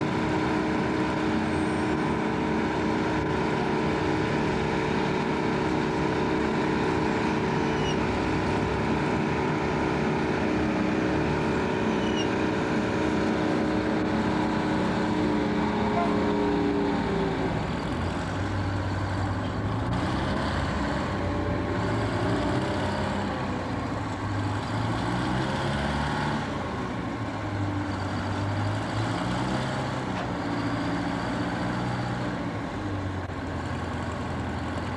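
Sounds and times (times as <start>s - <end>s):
pile driver engine running: 0.0s - 34.9s.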